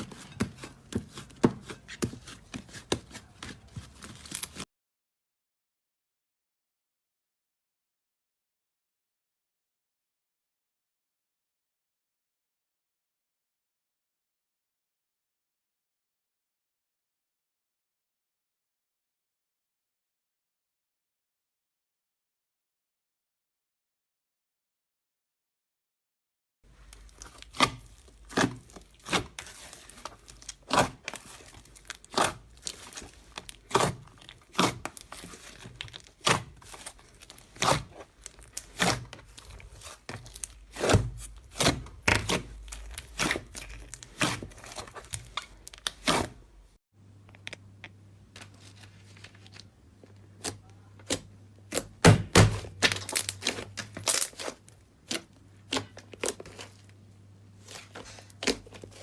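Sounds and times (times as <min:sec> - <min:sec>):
slime popping and crackling: 0:26.8 - 0:46.2.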